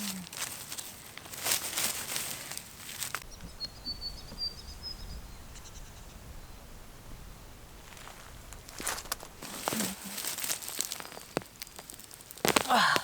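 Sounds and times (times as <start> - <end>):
rustling crinkling handling noise: 0.0 - 3.3, 7.8 - 13.0
outdoor background: 0.0 - 13.0
small bird chirping: 3.2 - 9.9.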